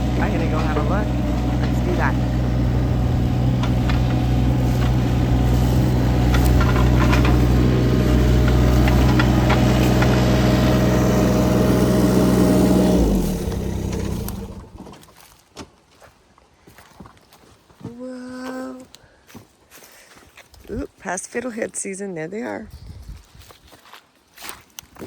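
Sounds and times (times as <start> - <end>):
vehicle engine idling: 0.0 - 14.8.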